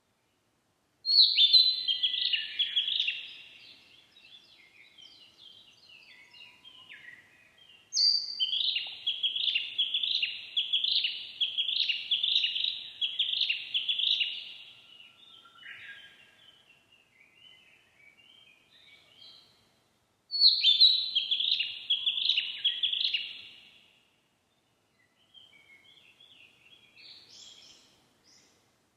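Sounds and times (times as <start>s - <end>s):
flycatcher singing: 8.0s - 14.6s, 20.4s - 23.6s.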